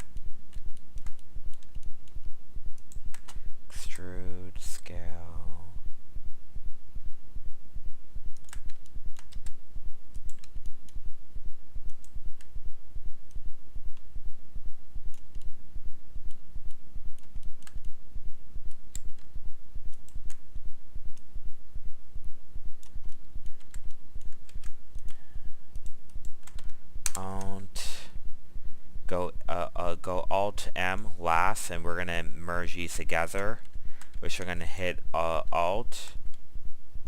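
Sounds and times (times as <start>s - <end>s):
keyboard and mouse clicks: 0.0s - 3.4s, 8.4s - 11.0s, 15.1s - 15.5s, 16.3s - 18.0s, 18.7s - 20.4s, 22.8s - 27.6s
low pulsing hum: 0.0s - 37.0s.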